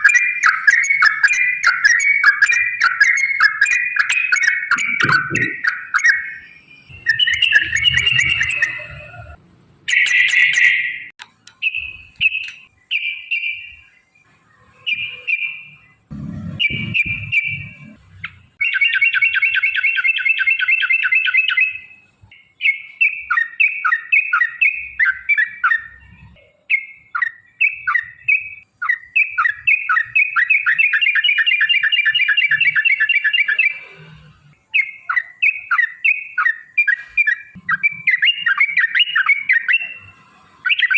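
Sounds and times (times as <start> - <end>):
bird chirping and trilling: 0.0 - 40.9.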